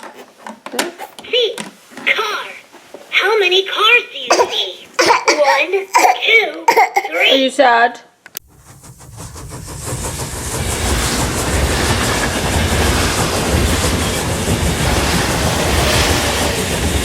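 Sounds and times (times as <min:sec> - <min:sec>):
train wheels rumbling and rattling: 0:08.5 - 0:17.0.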